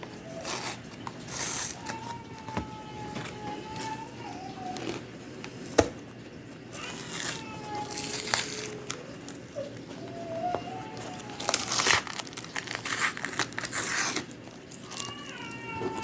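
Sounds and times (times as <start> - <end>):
cardboard packaging rustling: 0.0 - 16.0
young boy crying: 6.8 - 12.0, 14.8 - 16.0.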